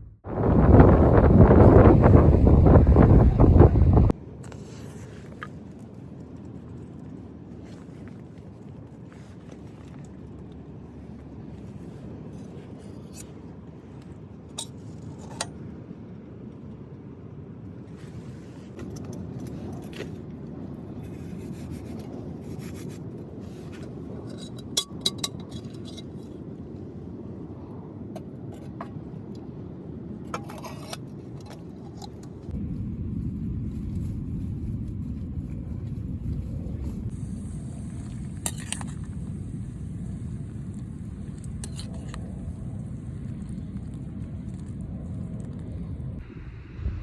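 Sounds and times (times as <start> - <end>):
wind on microphone: 0.0 - 4.2, 31.4 - 47.0.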